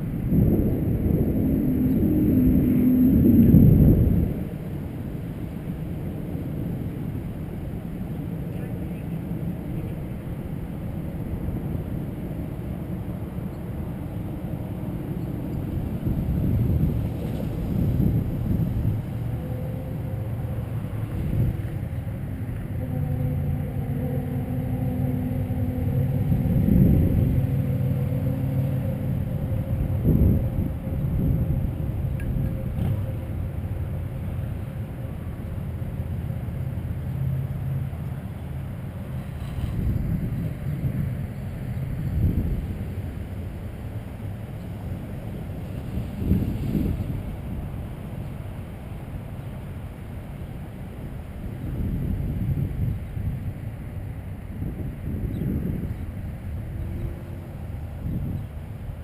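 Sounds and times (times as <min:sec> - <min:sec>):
wind buffeting microphone: 0:00.0 - 0:59.0.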